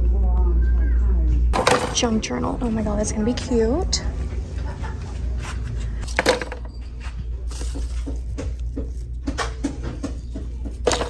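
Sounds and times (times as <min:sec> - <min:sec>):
steady low hum: 0:00.0 - 0:11.0
small items knocking and clattering: 0:01.6 - 0:02.2, 0:06.0 - 0:06.9, 0:07.5 - 0:11.0.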